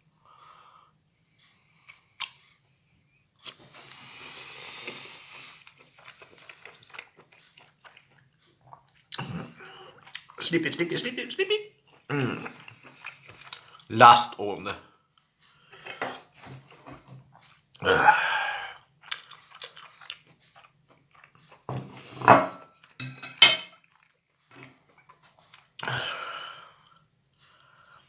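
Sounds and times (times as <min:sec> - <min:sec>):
person chewing: 0:01.3 - 0:02.8, 0:03.4 - 0:11.2, 0:11.8 - 0:13.9, 0:15.2 - 0:22.1, 0:23.9 - 0:28.0
tableware clinking: 0:22.2 - 0:23.8.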